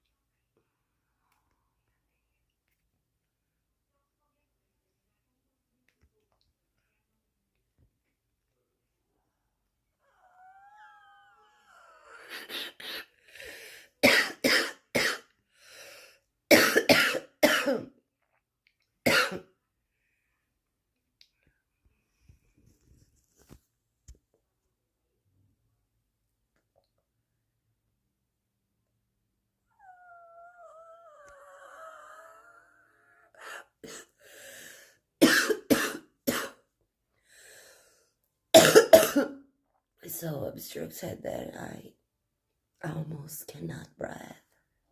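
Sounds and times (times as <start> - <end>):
woman breathing in: 13.2 - 13.9, 34.2 - 35.0, 37.2 - 38.1
woman coughing: 14.0 - 15.3, 16.5 - 18.0, 19.1 - 19.5, 35.2 - 36.6, 38.6 - 39.4.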